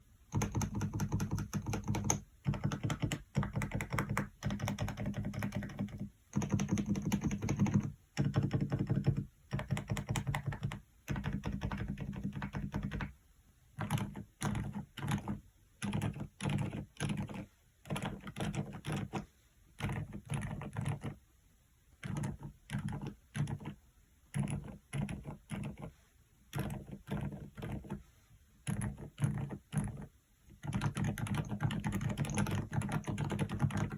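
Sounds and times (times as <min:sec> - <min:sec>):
mechanical keyboard typing: 0:00.3 - 0:13.2, 0:13.8 - 0:21.2, 0:22.0 - 0:25.9, 0:26.5 - 0:28.0, 0:28.6 - 0:33.9.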